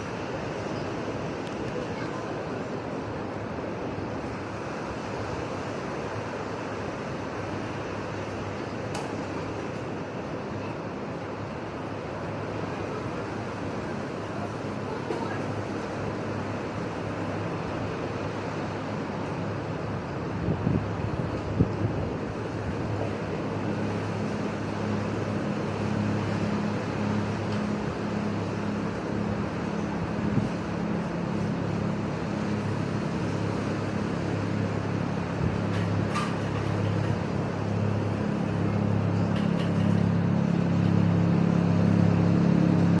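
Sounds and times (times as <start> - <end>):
wind: 0.0 - 43.0
engine humming: 11.8 - 43.0.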